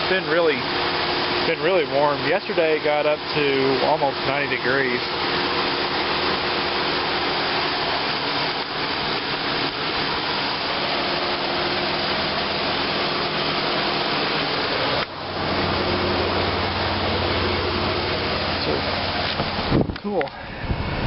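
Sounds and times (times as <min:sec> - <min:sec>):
car engine idling: 0:00.0 - 0:21.0
cooling fan whooshing: 0:00.0 - 0:21.0
low hum: 0:05.0 - 0:21.0.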